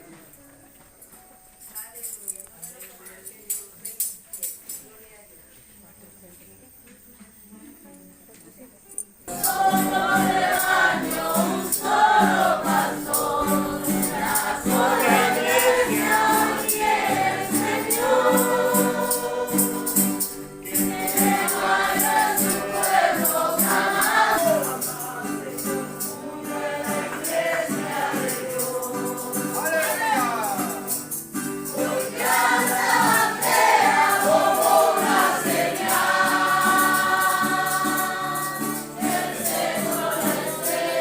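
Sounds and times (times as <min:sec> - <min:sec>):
shaken tambourine beat: 0:01.0 - 0:05.0, 0:08.9 - 0:41.0
group singing a hymn: 0:09.3 - 0:41.0.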